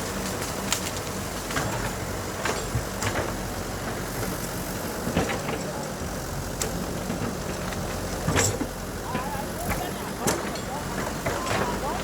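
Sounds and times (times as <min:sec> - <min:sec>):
heavy machine engine running: 0:00.0 - 0:12.0.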